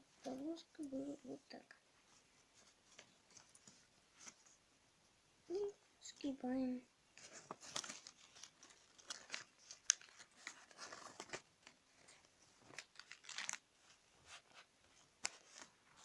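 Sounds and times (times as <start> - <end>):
paper being folded and creased: 7.2 - 16.0.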